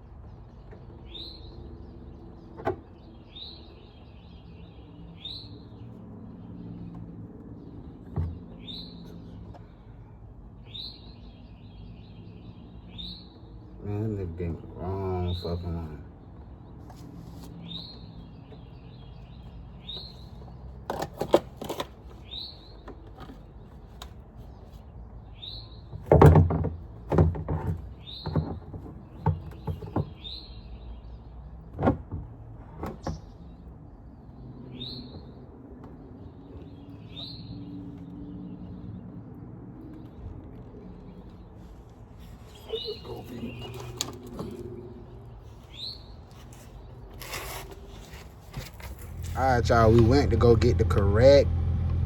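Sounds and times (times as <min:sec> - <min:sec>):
bird chirping: 0:00.0 - 0:09.9, 0:10.6 - 0:20.7, 0:21.7 - 0:26.1, 0:27.9 - 0:31.9, 0:32.8 - 0:50.2
sharp knocks and clanks: 0:25.9 - 0:30.3.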